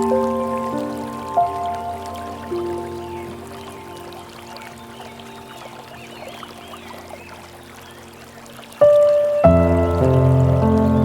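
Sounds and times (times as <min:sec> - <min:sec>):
forest stream rushing: 0:00.0 - 0:11.0
soft piano notes: 0:00.0 - 0:11.0
faint bird chirps: 0:01.2 - 0:09.7.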